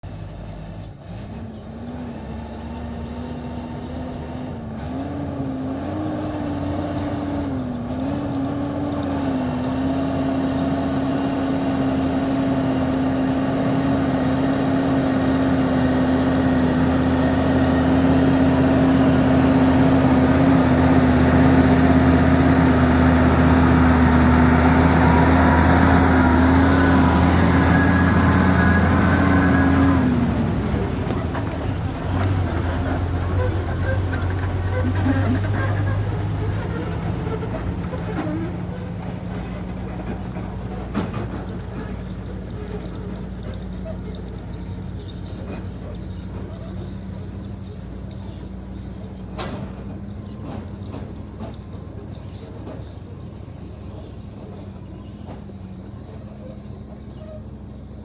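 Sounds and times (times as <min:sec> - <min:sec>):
diesel truck engine running: 0:00.0 - 0:58.0.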